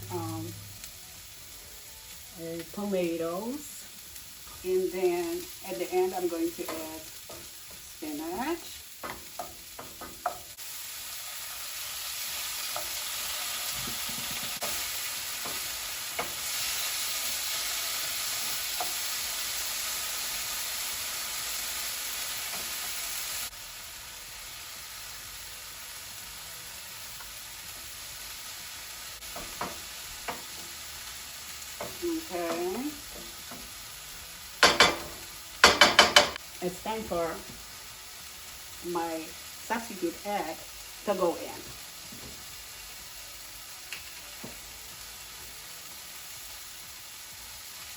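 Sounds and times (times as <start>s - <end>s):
vegetables sizzling in oil: 0.0s - 47.9s
utensil tapping a pan: 9.0s - 10.5s, 34.6s - 36.4s.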